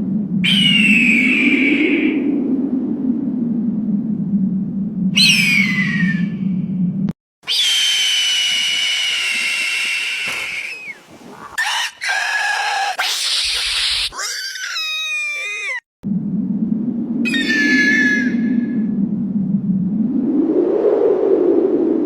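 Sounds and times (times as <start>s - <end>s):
eagle screeching: 5.2s - 6.3s, 7.4s - 15.8s, 17.3s - 18.6s.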